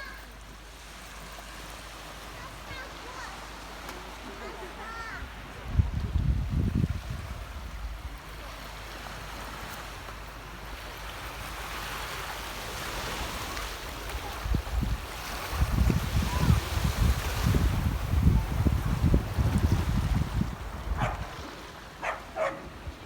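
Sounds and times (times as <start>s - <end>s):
surf washing onto beach: 0.0s - 23.0s
wind gusts buffeting microphone: 5.2s - 8.3s, 13.1s - 23.0s.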